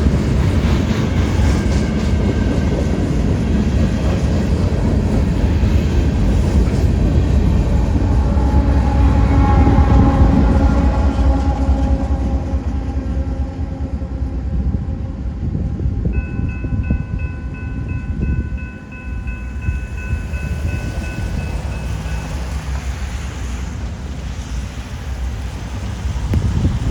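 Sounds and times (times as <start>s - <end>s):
wind on microphone: 0.0s - 12.9s, 13.5s - 22.3s, 25.7s - 26.9s
freight train rumbling past: 0.0s - 26.9s
crossing bell ringing: 16.1s - 23.0s.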